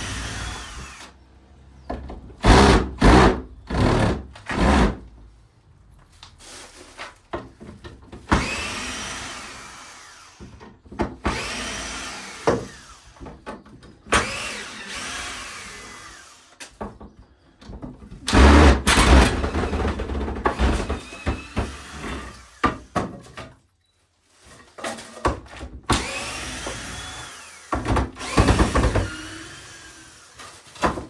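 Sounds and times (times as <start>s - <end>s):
power tool whining down: 0.0s - 1.2s, 8.3s - 10.5s, 11.3s - 13.2s, 14.1s - 16.6s, 18.3s - 22.9s, 25.9s - 30.5s
knocks and clatter of work: 1.8s - 5.2s, 7.3s - 9.1s, 10.4s - 11.7s, 16.6s - 23.6s, 24.6s - 29.5s, 30.4s - 31.0s.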